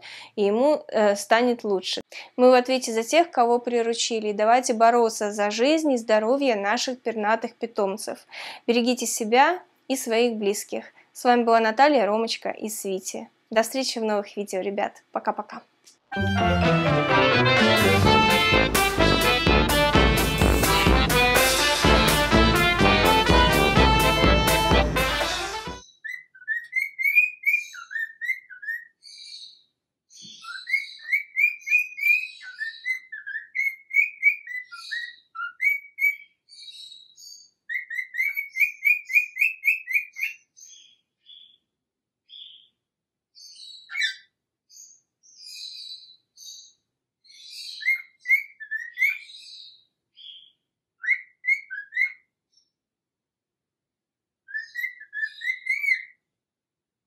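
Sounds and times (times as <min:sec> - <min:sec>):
parrot chirping and whistling: 0:25.8 - 0:28.9, 0:30.4 - 0:36.3, 0:37.7 - 0:40.4, 0:47.8 - 0:49.2, 0:51.0 - 0:52.2, 0:54.5 - 0:56.1.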